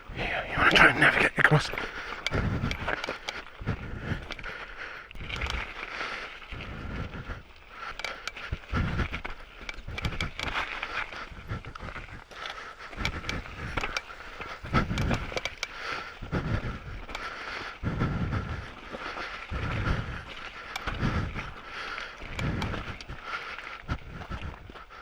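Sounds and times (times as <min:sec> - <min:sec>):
heavy breathing on microphone: 0:00.0 - 0:25.0
mountain bike rattling and clicking: 0:01.8 - 0:24.9.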